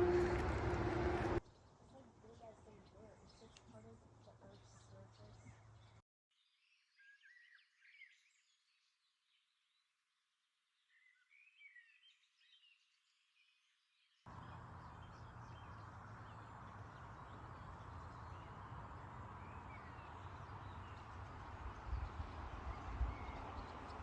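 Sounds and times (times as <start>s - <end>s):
low rumble: 0.0s - 1.4s
small birds chirping: 1.2s - 6.0s, 14.3s - 24.0s.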